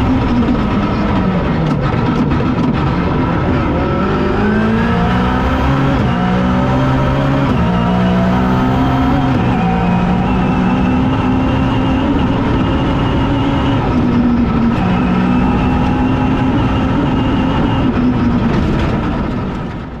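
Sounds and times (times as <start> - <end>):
rally car engine at high revs: 0.0 - 20.0.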